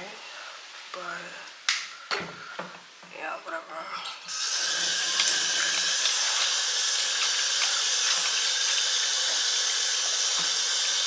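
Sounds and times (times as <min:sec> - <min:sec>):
water running from tap: 0:04.2 - 0:11.0
water splashing ticks: 0:05.1 - 0:10.5.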